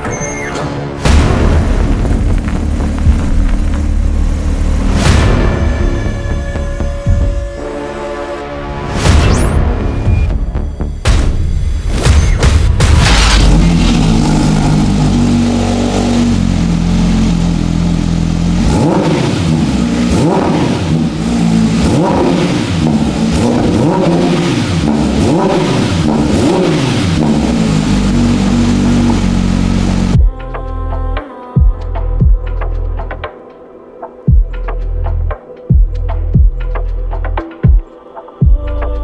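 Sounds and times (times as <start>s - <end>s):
car engine idling: 1.0s - 8.2s, 12.8s - 30.2s
engine revving: 1.0s - 10.4s, 11.8s - 30.2s.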